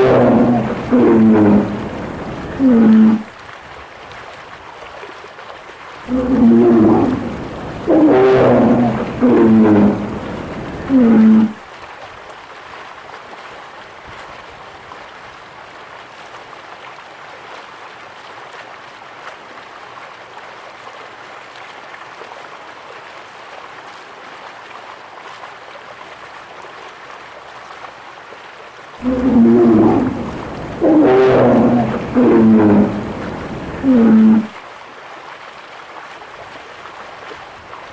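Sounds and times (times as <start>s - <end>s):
animal roar: 0.0s - 3.3s, 6.1s - 11.6s, 29.0s - 34.6s
rushing splashing water: 0.0s - 37.9s.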